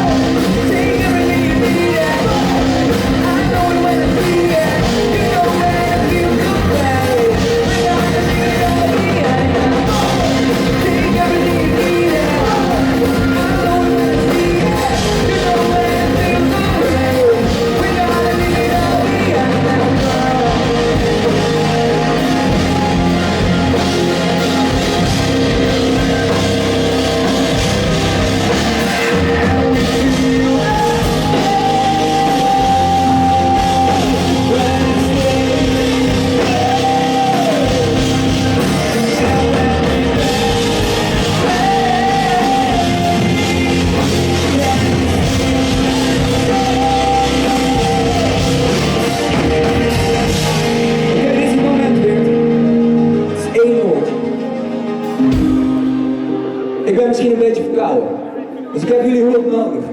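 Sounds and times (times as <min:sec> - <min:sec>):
live rock band playing: 0:00.0 - 0:59.9
sliding lead guitar melody: 0:00.0 - 0:59.9.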